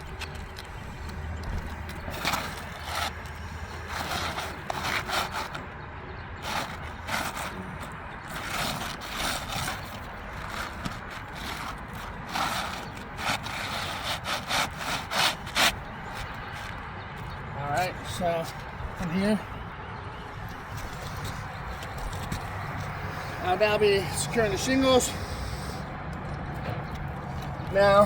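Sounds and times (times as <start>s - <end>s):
roofing shingles scraping: 0.0s - 19.4s.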